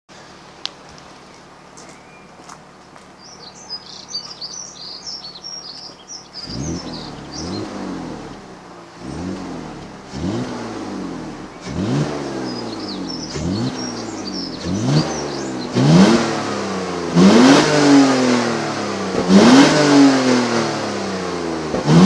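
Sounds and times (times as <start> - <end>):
birds chirping: 0.1 - 22.0
car engine revving: 6.0 - 22.0.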